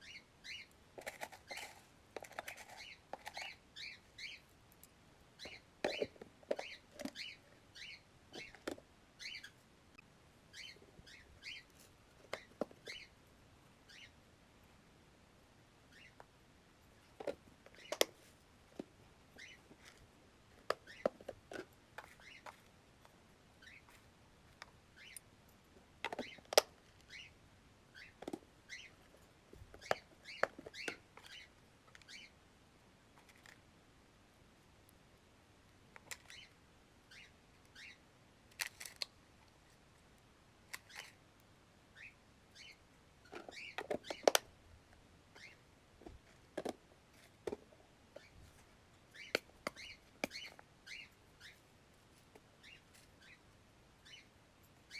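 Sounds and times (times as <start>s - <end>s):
faint bird chirps: 0.0s - 0.8s, 2.4s - 4.5s, 5.4s - 8.6s, 9.2s - 13.2s, 13.8s - 14.2s, 15.8s - 16.2s, 19.4s - 19.7s, 23.6s - 24.0s, 24.9s - 25.3s, 26.1s - 29.0s, 29.7s - 32.4s, 36.1s - 38.1s, 41.9s - 44.4s, 45.3s - 45.7s, 49.1s - 51.7s, 52.5s - 54.9s
clicks and rattles of bird bowls: 1.0s - 3.6s, 5.4s - 7.3s, 26.0s - 26.9s, 38.5s - 39.1s, 43.3s - 44.5s, 46.0s - 48.3s.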